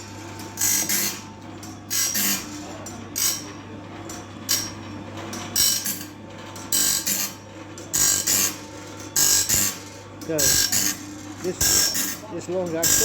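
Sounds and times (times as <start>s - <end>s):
grinding wheel rasping on blade: 9.2s - 13.0s.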